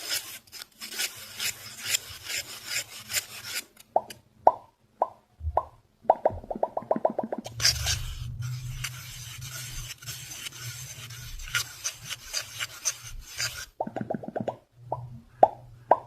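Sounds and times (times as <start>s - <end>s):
fast scratching on a surface: 0.0s - 3.8s, 7.5s - 13.8s.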